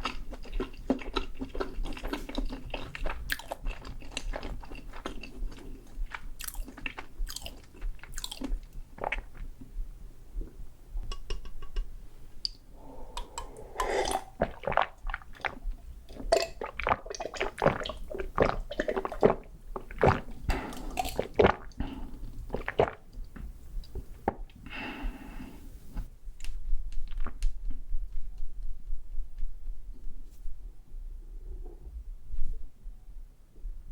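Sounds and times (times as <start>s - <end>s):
crunchy chewing: 0.0s - 9.4s
faint low hum: 0.0s - 33.9s.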